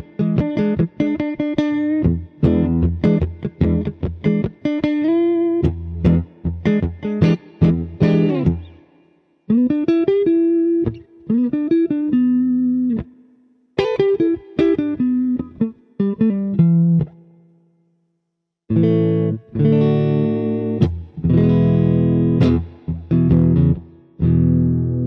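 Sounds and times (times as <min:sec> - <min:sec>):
electric guitar single-note phrases: 0:00.0 - 0:08.7, 0:09.5 - 0:13.1, 0:18.7 - 0:25.0
electric guitar chords: 0:00.0 - 0:13.2, 0:13.8 - 0:17.4, 0:18.7 - 0:25.0.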